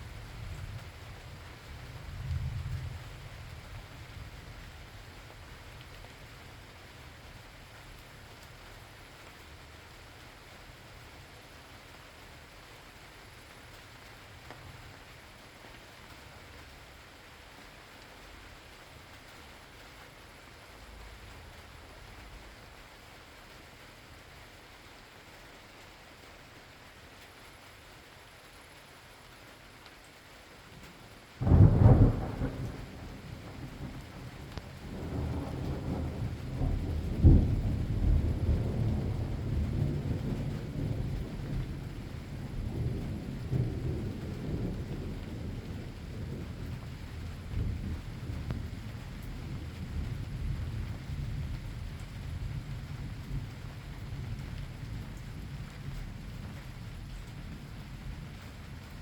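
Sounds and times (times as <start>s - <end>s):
steady rain hiss: 0.0s - 59.0s
rolling thunder: 31.4s - 59.0s.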